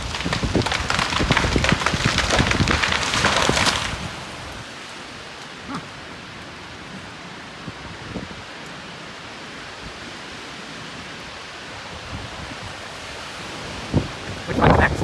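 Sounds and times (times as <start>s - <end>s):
tree branches cracking and snapping: 0.0s - 6.6s
wind rushing through trees: 0.0s - 15.0s.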